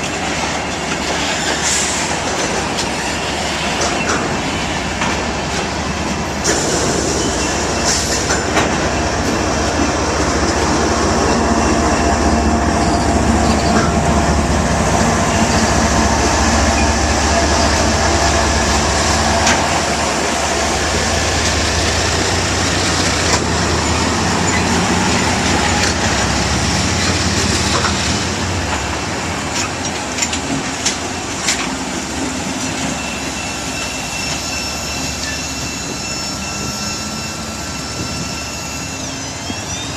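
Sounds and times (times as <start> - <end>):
train wheels rumbling on rails: 0.0 - 39.9
faint wheel squeal: 32.9 - 39.9.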